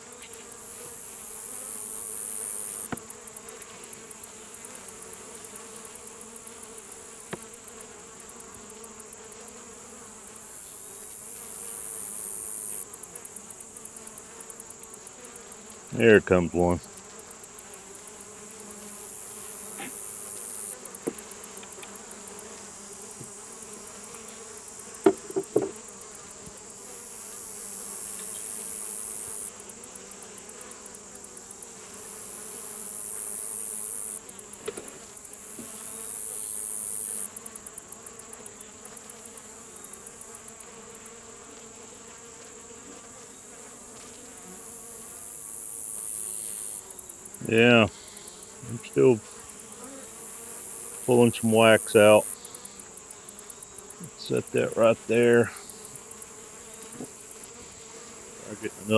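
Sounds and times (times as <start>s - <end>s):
honeybees buzzing: 0.0s - 58.9s
wooden frames knocking: 25.0s - 25.8s.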